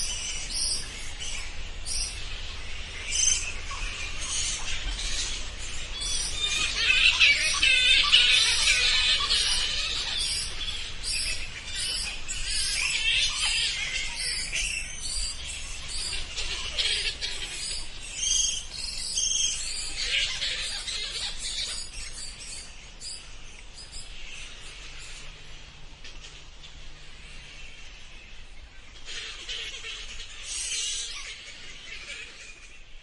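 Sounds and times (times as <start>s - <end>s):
bats squeaking: 3.0s - 25.3s.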